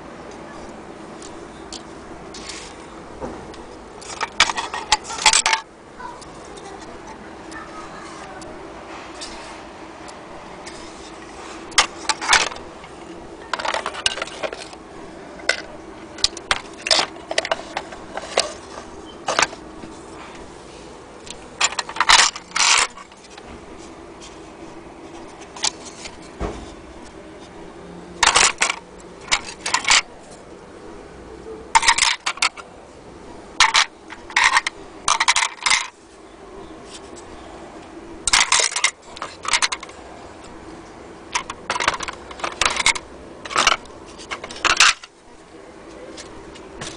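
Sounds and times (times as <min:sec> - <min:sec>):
metal and glass clock parts clinking: 0:41.3 - 0:45.1.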